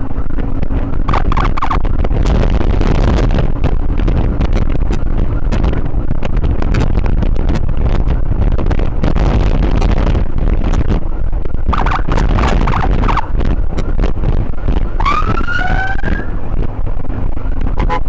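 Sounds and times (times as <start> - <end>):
motorcycle engine and road noise: 0.0 - 18.0
wind rush on microphone: 0.0 - 18.0
wavering siren: 11.7 - 13.3, 14.9 - 16.6.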